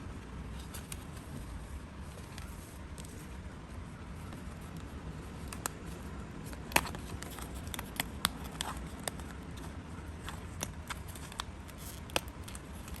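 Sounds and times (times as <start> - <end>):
low steady hum: 0.0 - 13.0
paper and crafting tools clicking: 4.3 - 13.0.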